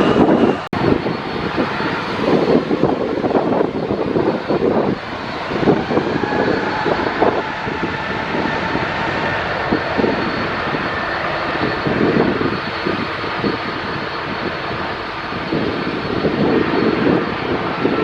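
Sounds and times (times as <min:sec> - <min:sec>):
jet engines roaring: 0:00.0 - 0:18.0
wind buffeting microphone: 0:00.0 - 0:18.0.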